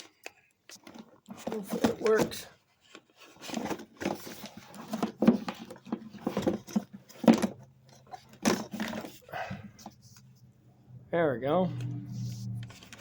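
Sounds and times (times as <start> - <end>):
handling knocks rubs and rattles: 0.7 - 10.6.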